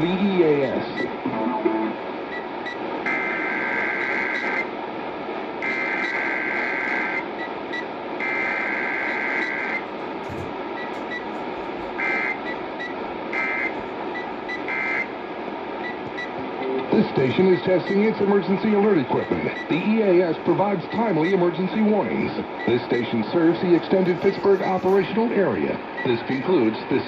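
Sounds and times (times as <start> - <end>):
radio static hiss: 0.0 - 27.0.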